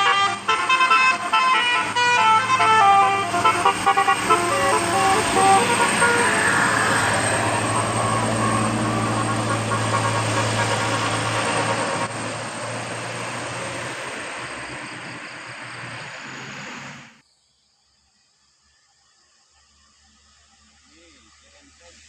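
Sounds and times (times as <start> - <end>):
bus engine hum: 0.0 - 17.2
road noise: 0.0 - 17.2.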